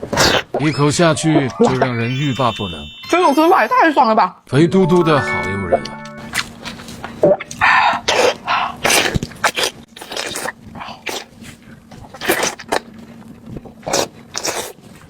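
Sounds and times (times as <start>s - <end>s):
chewing: 6.4s - 15.0s
wet slurping and sucking: 7.5s - 11.4s, 13.8s - 14.8s.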